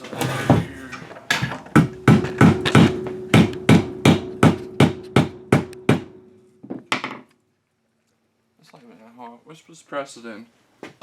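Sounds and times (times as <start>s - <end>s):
hammer tapping metal: 1.3s - 7.2s
metallic ring: 1.8s - 6.7s.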